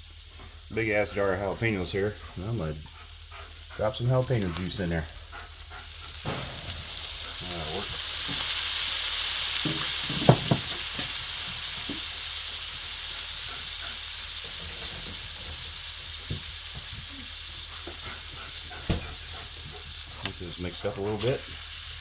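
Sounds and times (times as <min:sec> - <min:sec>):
meat and vegetables sizzling on griddle: 0:00.0 - 0:22.0.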